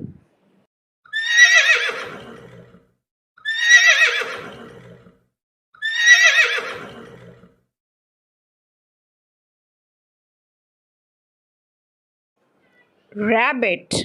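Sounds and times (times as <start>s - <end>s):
horse whinnying: 1.1s - 5.2s, 5.8s - 7.6s.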